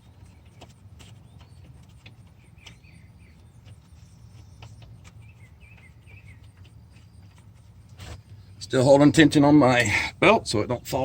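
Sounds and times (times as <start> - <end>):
faint bird chirps: 0.0 - 8.6
steady low hum: 0.0 - 11.0.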